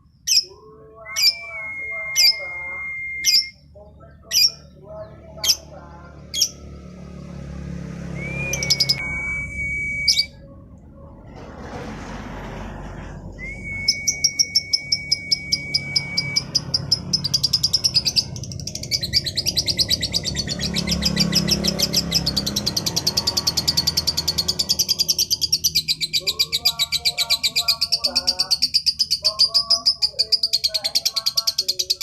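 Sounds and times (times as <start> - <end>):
lovebird chirping: 8.2 - 10.5, 13.4 - 32.0.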